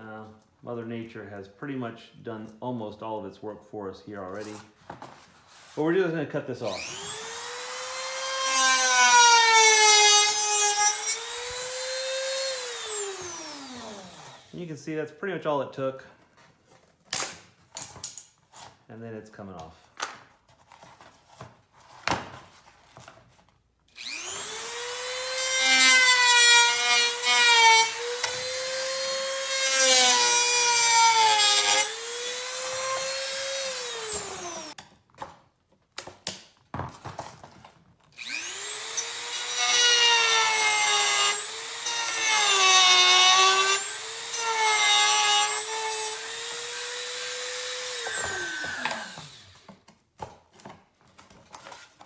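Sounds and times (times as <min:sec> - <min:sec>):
rotary tool cutting: 0:06.7 - 0:14.5, 0:24.0 - 0:34.8, 0:38.2 - 0:49.7.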